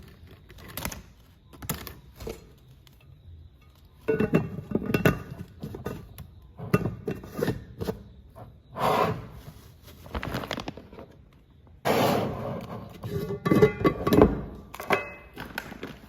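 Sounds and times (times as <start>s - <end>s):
objects knocking and scraping: 1.4s - 16.0s
rustling: 9.3s - 11.2s.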